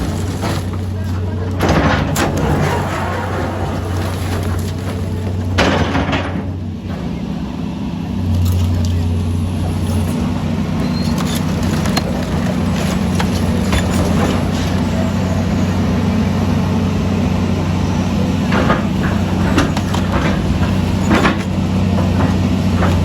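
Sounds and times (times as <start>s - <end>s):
knocks and clatter: 0.0s - 7.2s, 11.1s - 15.1s, 18.4s - 23.0s
diesel engine humming: 0.0s - 23.0s.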